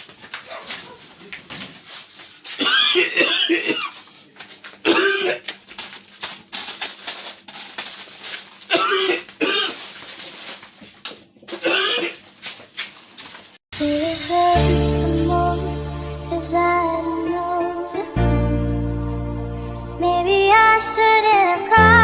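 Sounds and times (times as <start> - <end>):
person coughing: 2.6 - 4.0, 4.8 - 5.4, 8.7 - 9.8, 11.5 - 12.2.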